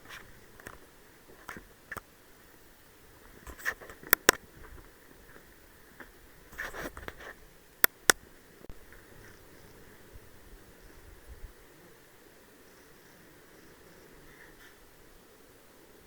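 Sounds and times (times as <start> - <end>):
shuffling noise: 3.2 - 7.4, 14.3 - 14.8.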